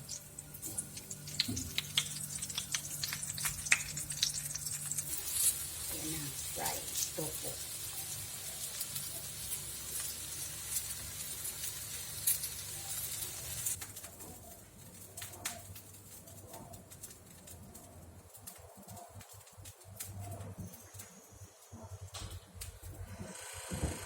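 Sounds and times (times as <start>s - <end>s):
tofu sizzling in hot oil: 0.0s - 13.9s
oil popping and crackling: 0.0s - 21.2s.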